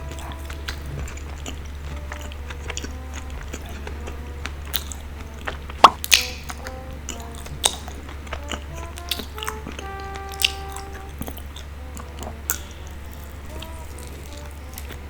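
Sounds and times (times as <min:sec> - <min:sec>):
light background music: 0:00.0 - 0:15.0
moist clicks of sticky food: 0:00.0 - 0:15.0.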